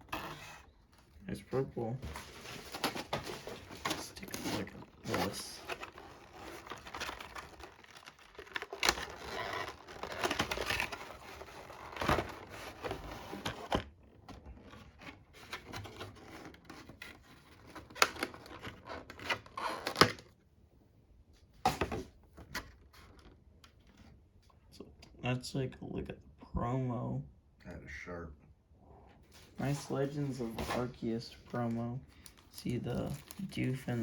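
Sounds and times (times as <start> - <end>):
packaging rustling and tearing: 0.0 - 14.0, 14.6 - 20.3, 29.6 - 34.0.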